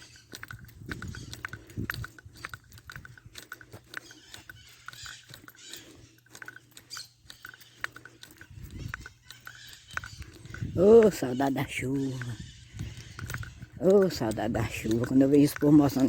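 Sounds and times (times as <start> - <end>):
animals clicking and chirping: 0.0 - 16.0.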